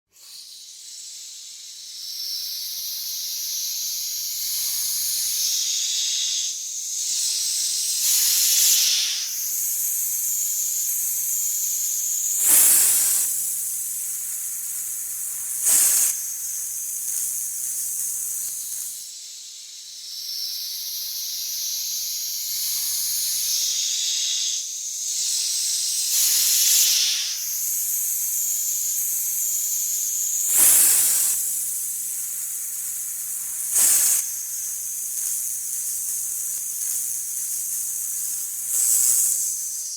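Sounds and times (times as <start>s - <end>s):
snake hissing: 0.3s - 6.3s, 6.9s - 19.0s, 22.4s - 35.4s, 38.6s - 39.5s.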